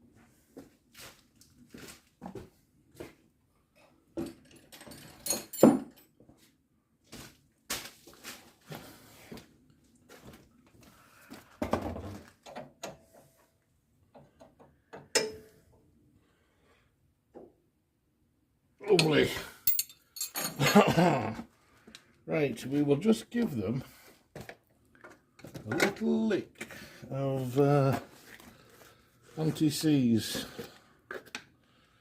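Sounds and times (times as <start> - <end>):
ringing metal clink: 15.2 - 15.5, 19.0 - 20.8.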